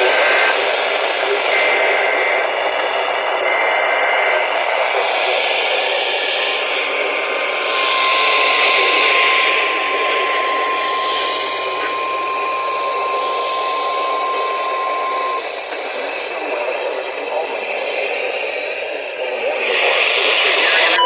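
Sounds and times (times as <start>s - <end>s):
radio static hiss: 0.0s - 21.0s
steady alarm tone: 5.3s - 20.2s.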